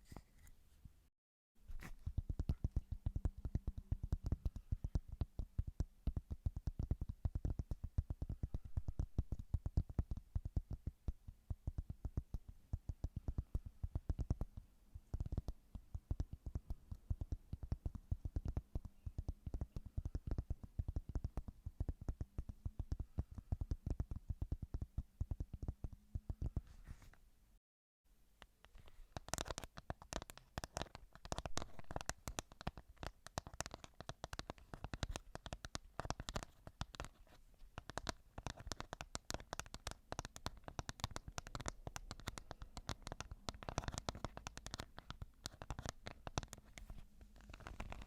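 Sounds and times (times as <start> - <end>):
faint steady hum: 0.0 - 48.0
rapid tapping on a surface: 29.2 - 48.0.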